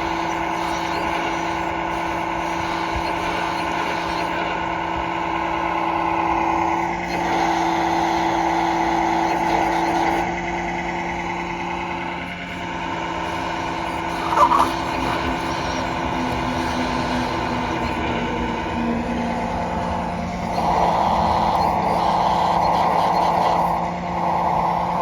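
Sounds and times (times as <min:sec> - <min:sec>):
simulated diesel engine sound: 0:00.0 - 0:25.0.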